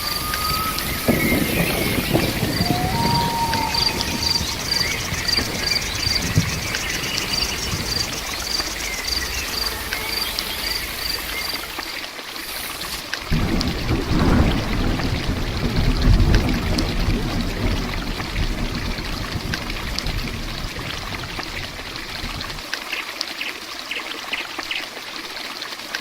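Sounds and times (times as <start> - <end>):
short whistled note: 0.0 - 5.2
insects chirping: 0.0 - 13.5
rain hissing: 0.0 - 22.8.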